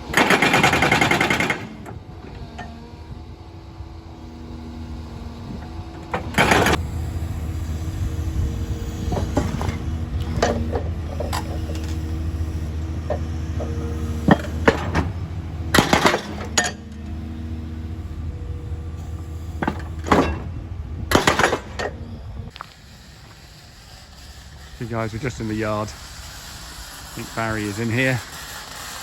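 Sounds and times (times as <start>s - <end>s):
engine humming: 0.0s - 29.0s
sharp knocks and clanks: 9.0s - 12.2s, 13.0s - 17.1s, 19.6s - 20.5s, 21.1s - 22.0s.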